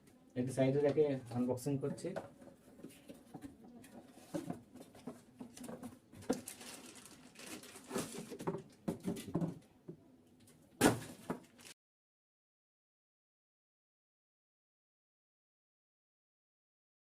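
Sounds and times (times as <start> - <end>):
packaging rustling: 4.4 - 8.8, 11.0 - 11.8.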